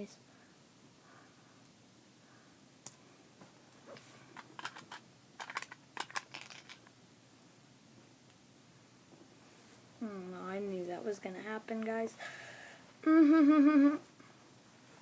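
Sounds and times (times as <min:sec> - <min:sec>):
plastic packaging crinkling: 0:04.4 - 0:06.9.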